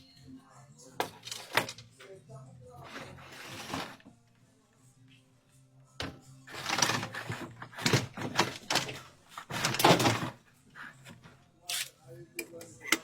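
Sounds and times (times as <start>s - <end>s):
scraping and knocking: 2.8s - 4.0s, 6.5s - 10.4s.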